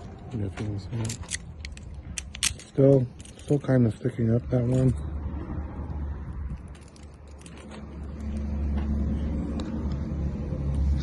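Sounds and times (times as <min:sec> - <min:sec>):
vehicle engine rumbling: 0:00.0 - 0:11.0.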